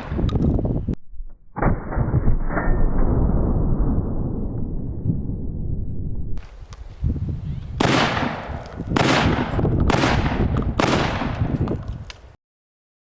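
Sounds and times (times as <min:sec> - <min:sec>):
shotgun blasts: 0:07.7 - 0:12.1.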